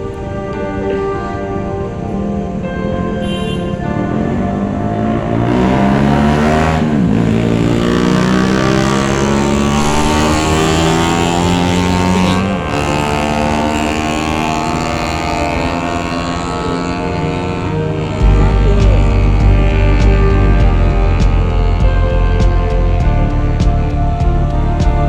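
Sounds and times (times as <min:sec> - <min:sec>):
road and wind noise: 0:00.0 - 0:25.0
vehicle engine running: 0:04.9 - 0:16.8, 0:18.1 - 0:25.0.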